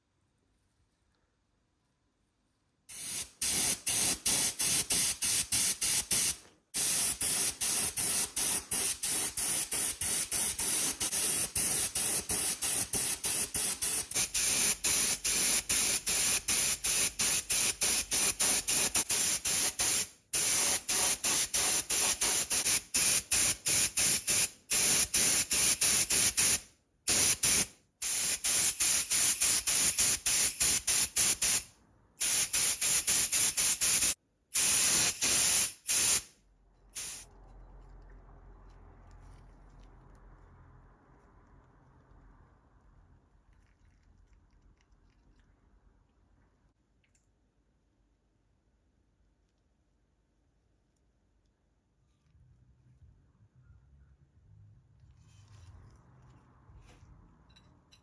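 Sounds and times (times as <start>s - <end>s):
loud hissing spray: 2.9s - 31.6s, 37.0s - 37.3s.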